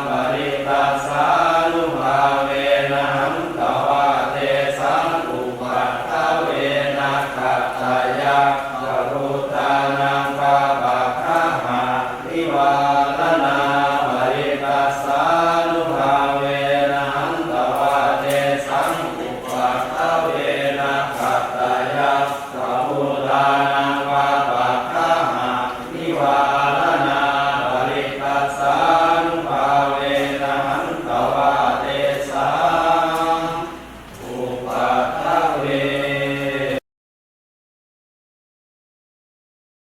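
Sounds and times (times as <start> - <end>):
monks chanting in unison: 0.0 - 36.8.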